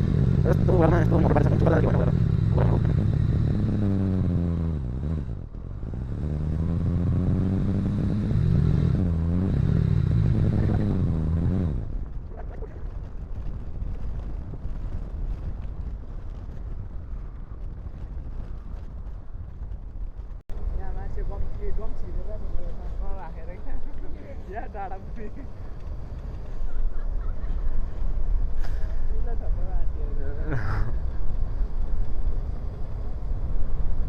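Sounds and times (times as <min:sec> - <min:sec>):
motorcycle engine revving: 0:00.0 - 0:12.8
rough engine rumble: 0:00.0 - 0:34.0.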